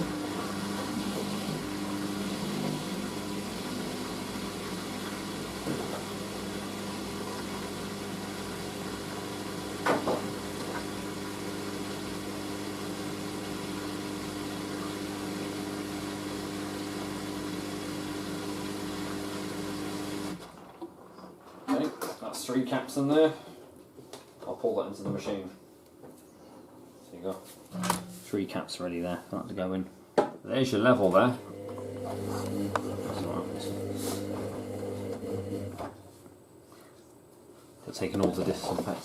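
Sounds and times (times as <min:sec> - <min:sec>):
drain pump humming: 0:00.0 - 0:20.4, 0:31.0 - 0:35.9.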